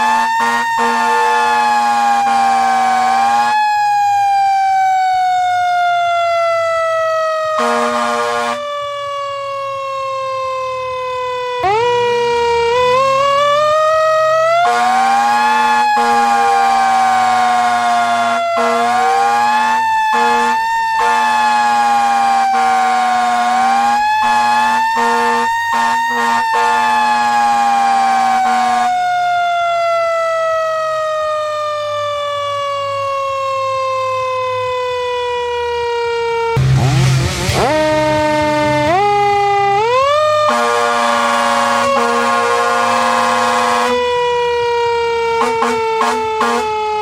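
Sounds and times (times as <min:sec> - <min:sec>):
siren wailing: 0:00.0 - 0:47.0
steady low tone: 0:36.6 - 0:39.0.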